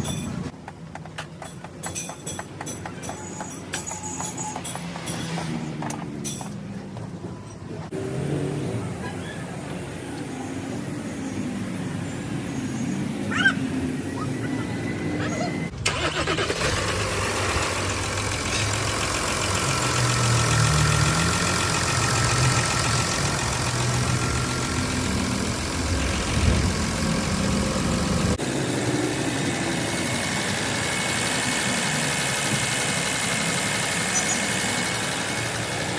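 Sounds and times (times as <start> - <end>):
car engine idling: 15.8 - 35.9.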